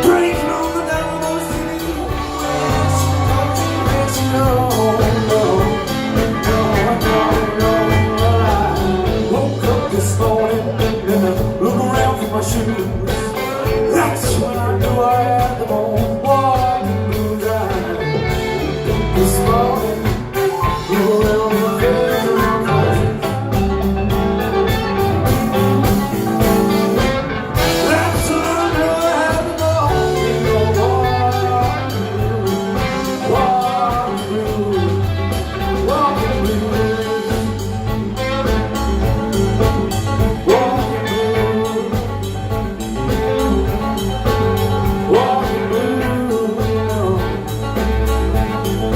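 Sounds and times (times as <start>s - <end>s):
live band playing blues-rock: 0.0s - 48.9s.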